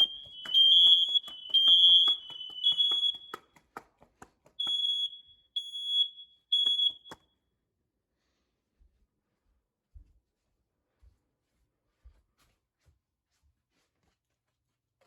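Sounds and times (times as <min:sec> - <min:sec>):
smoke alarms beeping: 0:00.0 - 0:03.4, 0:04.6 - 0:07.2.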